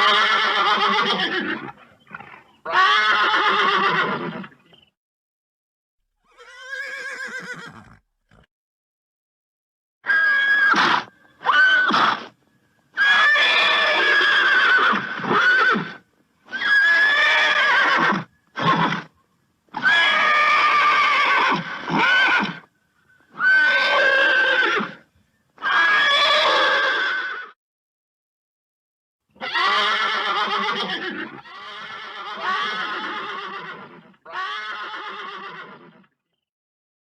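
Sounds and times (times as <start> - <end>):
horse neighing and whinnying: 0.0 - 4.6, 6.2 - 8.5, 10.0 - 12.4, 13.0 - 19.1, 19.7 - 22.7, 23.3 - 25.0, 25.6 - 27.6, 29.4 - 36.2.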